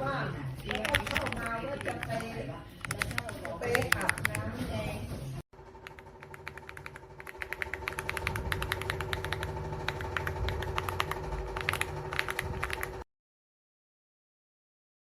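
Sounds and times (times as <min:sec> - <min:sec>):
mechanical keyboard keys clicking: 0:00.7 - 0:04.5, 0:05.8 - 0:13.0
steady hum: 0:05.6 - 0:13.0.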